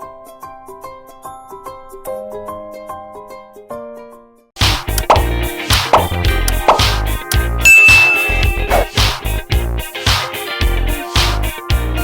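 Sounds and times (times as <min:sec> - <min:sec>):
light bouncy plucked tune: 0:04.9 - 0:09.4.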